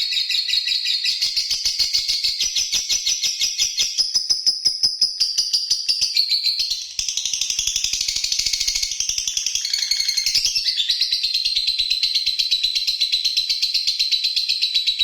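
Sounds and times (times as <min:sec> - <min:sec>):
bird chattering song: 0:07.0 - 0:11.2.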